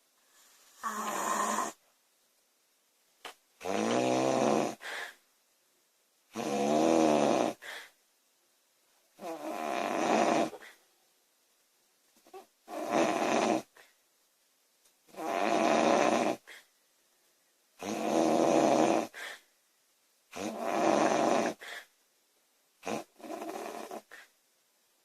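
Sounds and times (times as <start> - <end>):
girl snoring loudly: 0.8 - 1.8, 3.6 - 4.9, 6.4 - 7.6, 9.2 - 10.6, 12.7 - 13.7, 15.1 - 16.5, 17.8 - 19.2, 20.4 - 21.7, 22.8 - 24.2.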